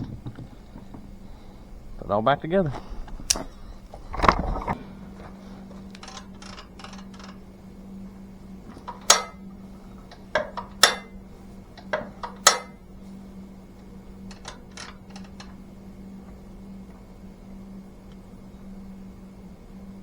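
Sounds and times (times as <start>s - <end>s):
steady low hum: 0.0s - 20.0s
metal tools clinking: 5.8s - 7.4s, 14.3s - 15.6s.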